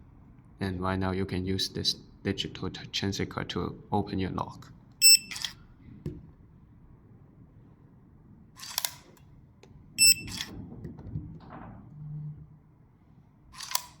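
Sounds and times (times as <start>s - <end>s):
electronic lock beep: 5.0s - 5.6s, 10.0s - 10.5s.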